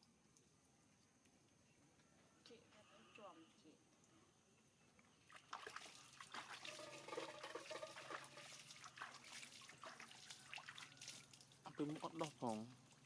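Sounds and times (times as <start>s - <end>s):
bath water splashing and trickling: 5.2s - 13.0s.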